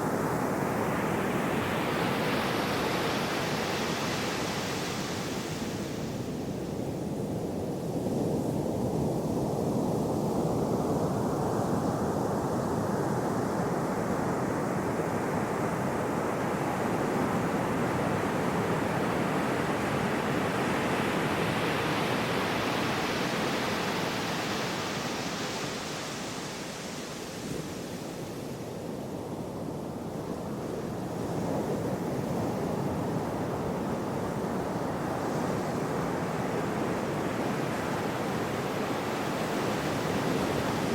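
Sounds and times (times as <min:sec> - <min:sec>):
sea waves washing in: 0:00.0 - 0:07.3, 0:15.1 - 0:40.9.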